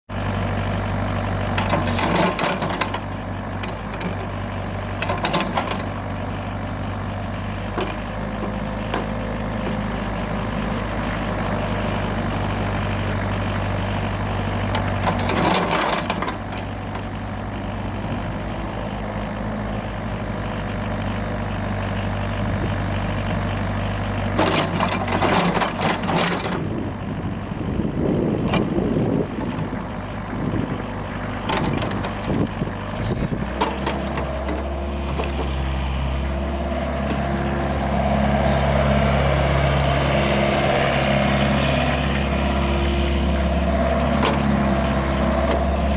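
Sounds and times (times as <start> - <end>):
excavator diesel engine running: 0.1 - 45.9
hydraulic hiss and rattle: 33.0 - 34.3.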